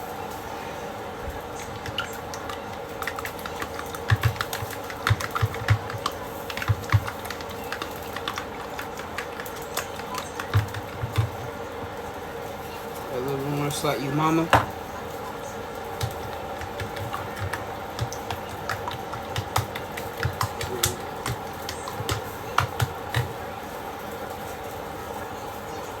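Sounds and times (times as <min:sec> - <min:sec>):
appliance hum: 0:00.0 - 0:26.0
utensils clicking against dishes: 0:01.6 - 0:11.5.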